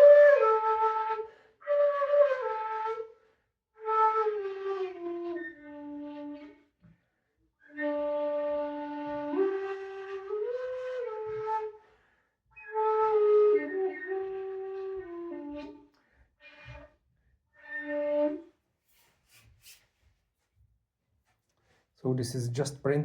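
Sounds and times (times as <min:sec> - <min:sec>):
bamboo flute held notes: 0:07.6 - 0:11.9, 0:12.6 - 0:16.9, 0:17.6 - 0:18.5.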